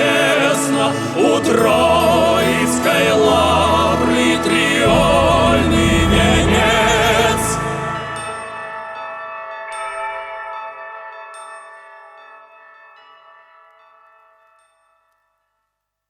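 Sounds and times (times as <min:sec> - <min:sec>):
voices singing with vibrato: 0:00.0 - 0:08.9
sustained accompaniment: 0:00.0 - 0:12.9.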